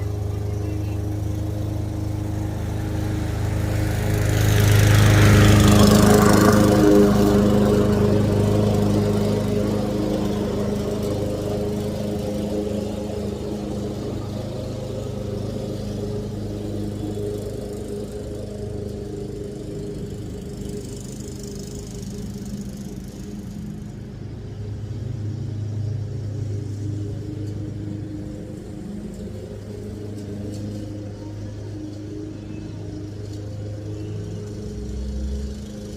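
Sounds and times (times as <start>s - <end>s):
lawn mower engine running: 0.0s - 35.9s.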